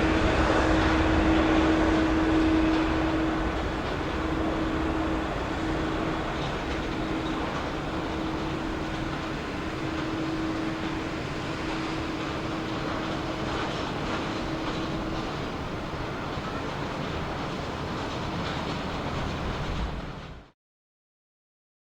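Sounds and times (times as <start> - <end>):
held hum: 0.0 - 17.5
jet engines rumbling: 0.0 - 20.5.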